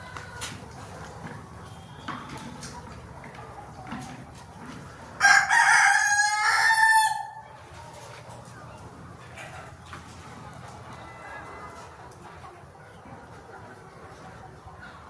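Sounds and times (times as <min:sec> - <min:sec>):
chickens clucking: 0:00.0 - 0:15.0
rooster crowing: 0:05.2 - 0:07.5.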